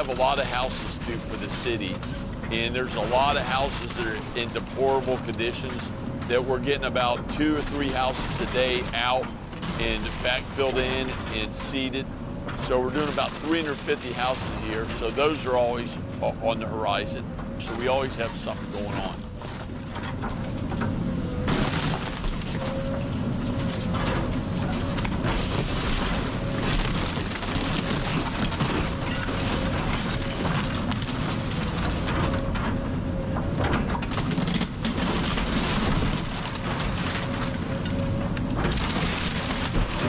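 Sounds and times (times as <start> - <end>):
machine engine running: 0.0 - 40.0
wood and debris crashing: 21.4 - 22.7, 23.8 - 32.6, 33.7 - 37.7, 38.5 - 40.0.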